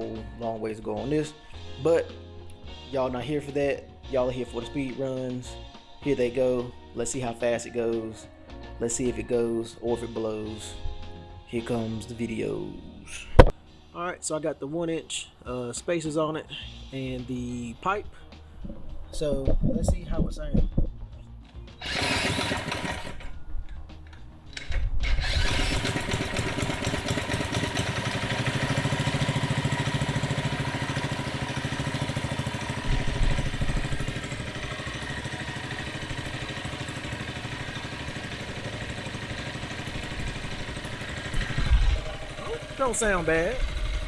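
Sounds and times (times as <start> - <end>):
engine revving: 21.8 - 23.4, 25.1 - 44.0
small engine starting and idling: 21.8 - 44.0.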